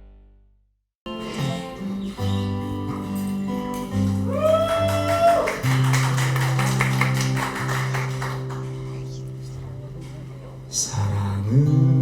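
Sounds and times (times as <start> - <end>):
guitar chords: 1.1 - 12.0.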